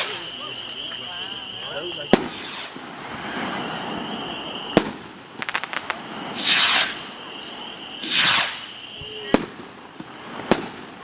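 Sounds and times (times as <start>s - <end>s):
firework crackles: 0.0s - 11.0s
rocket bursts banging: 4.7s - 7.2s
short rushing hisses: 5.6s - 9.3s.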